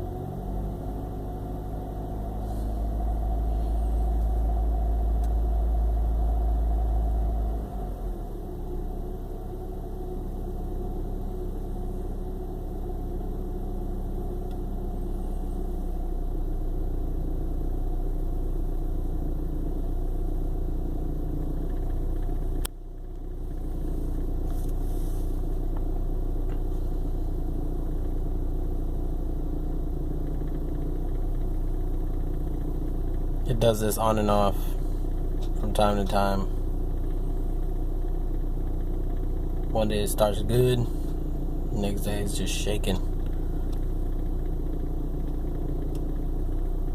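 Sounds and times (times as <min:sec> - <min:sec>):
car engine idling roughly: 0:00.0 - 0:46.9.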